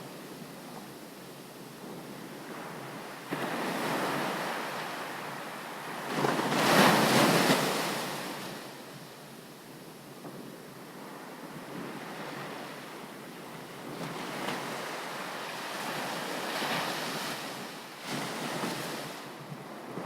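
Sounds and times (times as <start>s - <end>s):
sea waves breaking on beach: 2.4s - 8.6s, 13.7s - 20.0s.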